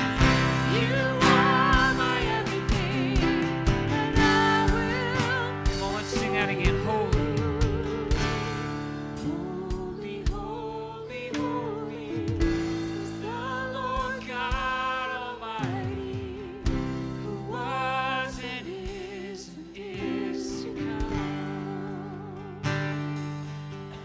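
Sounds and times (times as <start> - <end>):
sustained instrumental chords: 0.0 - 19.0
person singing with vibrato: 0.0 - 22.9.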